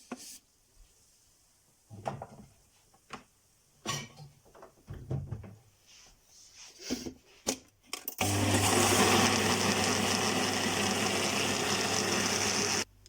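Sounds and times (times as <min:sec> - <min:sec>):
electric blender grinding: 0:08.2 - 0:12.9.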